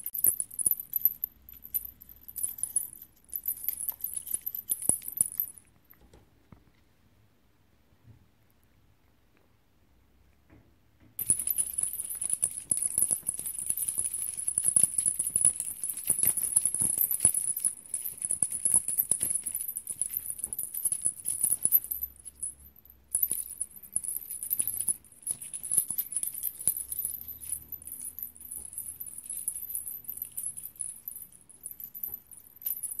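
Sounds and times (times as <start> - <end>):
jingling rattle shaken: 0.0 - 5.7, 11.2 - 33.0.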